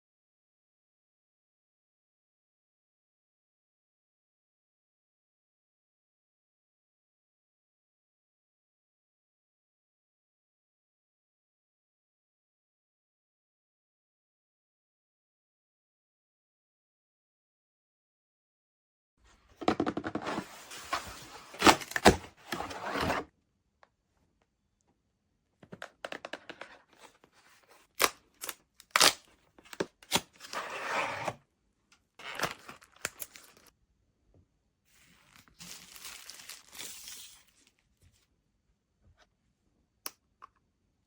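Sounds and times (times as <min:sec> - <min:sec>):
tearing and crinkling: 0:27.8 - 0:29.3, 0:32.2 - 0:33.7, 0:35.0 - 0:37.6.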